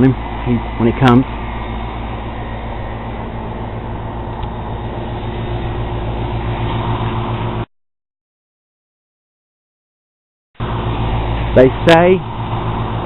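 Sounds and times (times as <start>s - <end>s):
rumbling hiss: 0.0s - 7.6s, 10.6s - 13.0s
machine hum: 0.0s - 7.7s, 10.6s - 13.0s.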